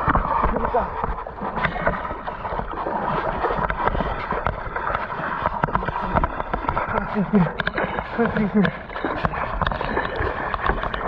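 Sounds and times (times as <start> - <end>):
sea water sloshing and splashing: 0.0 - 11.0.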